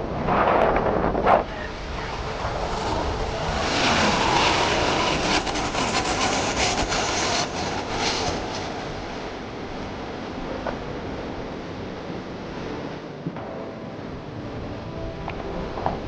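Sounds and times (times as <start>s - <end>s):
jet engines roaring: 0.0s - 13.1s
rough crackle: 0.2s - 9.4s.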